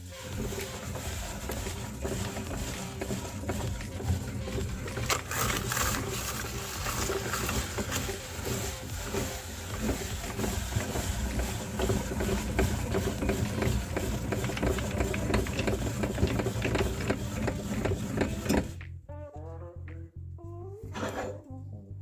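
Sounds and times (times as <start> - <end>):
meat grinder motor running: 0.0 - 18.8
biscuits crackling and crunching: 4.7 - 8.4.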